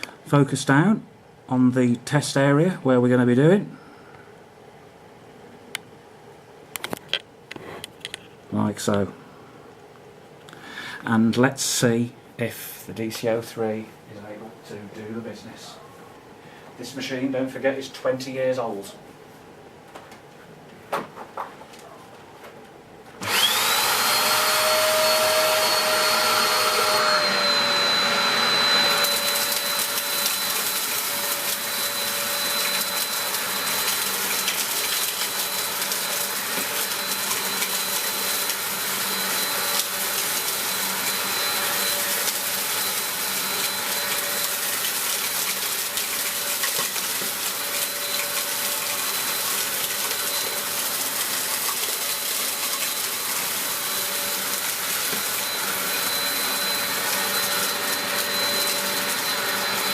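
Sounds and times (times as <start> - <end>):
vacuum cleaner motor whine: 23.2 - 59.9.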